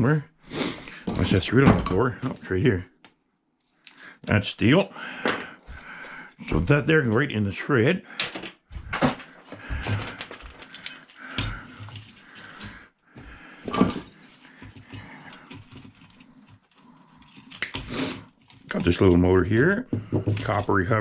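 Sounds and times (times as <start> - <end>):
scrap parts knocking and clattering: 8.2 - 21.0.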